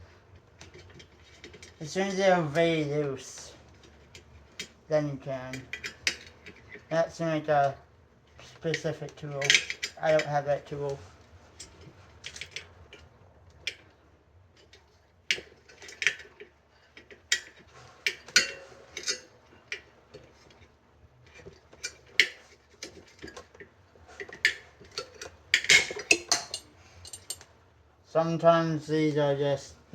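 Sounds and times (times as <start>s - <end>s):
metal tool clicking on spokes: 3.4s - 7.0s, 8.4s - 11.0s, 14.6s - 20.6s, 21.3s - 27.5s.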